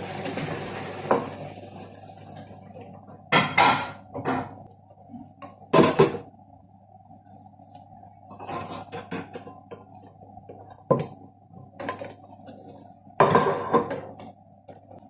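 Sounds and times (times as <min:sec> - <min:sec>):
faint steady hum: 0:00.0 - 0:15.0
metal pots and lids clattering: 0:08.3 - 0:09.6, 0:13.2 - 0:14.1.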